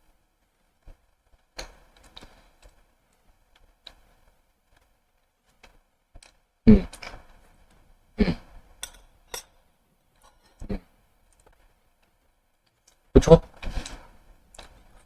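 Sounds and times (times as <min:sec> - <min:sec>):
person humming mm: 0:08.2 - 0:08.5.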